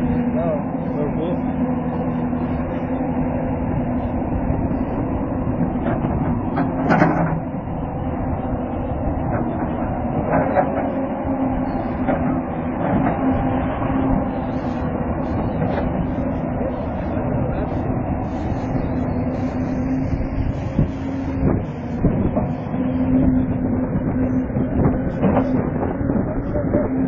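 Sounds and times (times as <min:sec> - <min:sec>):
low machine hum: 0:00.0 - 0:27.0
knocks and clanks: 0:24.7 - 0:26.0.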